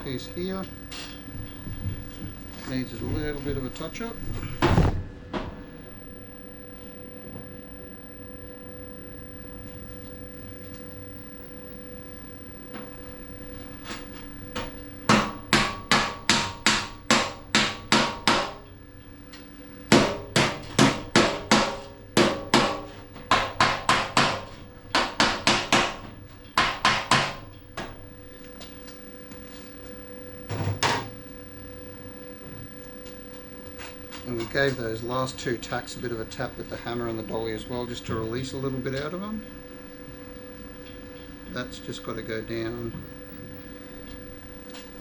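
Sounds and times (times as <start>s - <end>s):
hammer tapping sheet metal: 13.8s - 18.6s, 19.9s - 27.9s.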